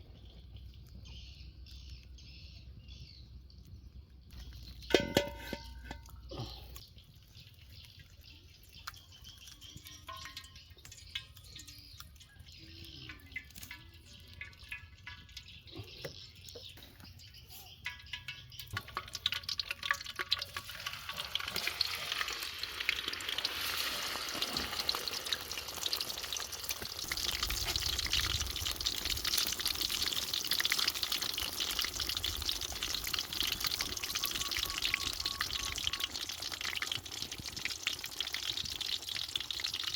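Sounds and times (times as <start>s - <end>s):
fish sizzling: 17.8s - 39.9s.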